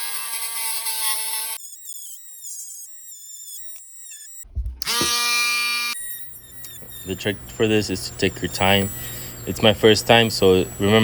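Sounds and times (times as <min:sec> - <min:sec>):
rotary tool grinding whine: 0:00.0 - 0:09.5
low thump: 0:04.5 - 0:05.2.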